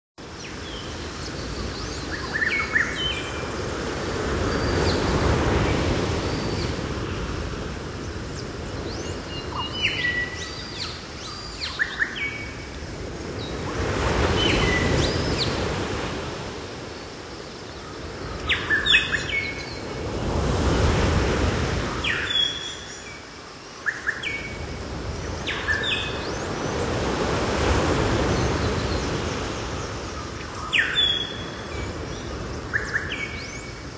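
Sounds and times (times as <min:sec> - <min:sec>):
surf washing in: 0:00.2 - 0:33.9
birds chirping: 0:16.9 - 0:20.1, 0:21.8 - 0:33.9.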